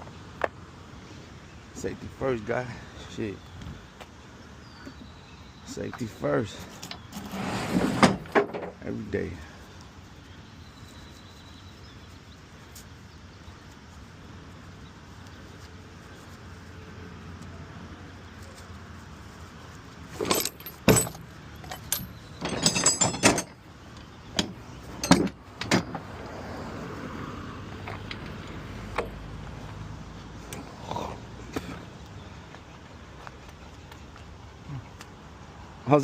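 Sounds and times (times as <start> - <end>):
metallic clanks and rattles: 20.1 - 26.1.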